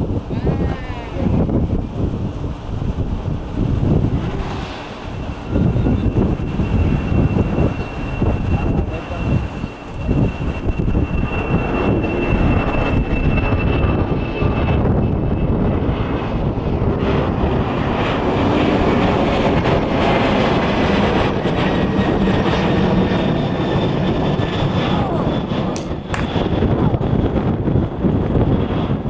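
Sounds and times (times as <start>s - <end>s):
jet engines roaring: 0.0s - 29.0s
faint high whine: 0.1s - 14.3s.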